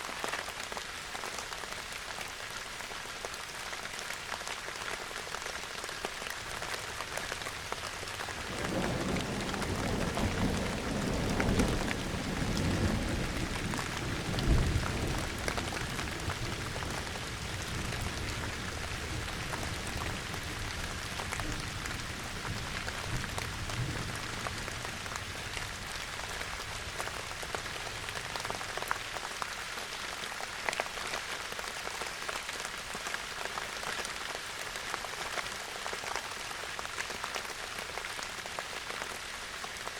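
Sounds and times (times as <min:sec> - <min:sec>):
steady rain falling: 0:00.0 - 0:39.9
distant thunder roll: 0:08.5 - 0:16.4.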